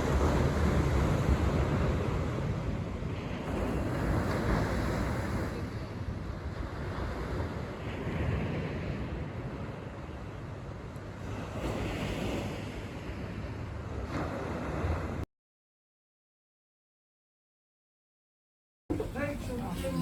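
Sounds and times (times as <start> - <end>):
wind buffeting microphone: 0.0 - 15.2.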